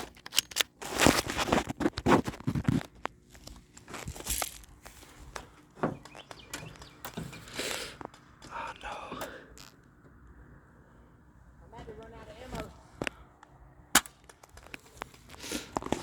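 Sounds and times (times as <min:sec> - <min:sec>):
footsteps crunching through dry leaves: 0:03.9 - 0:05.4
sharp clicks: 0:06.0 - 0:09.9.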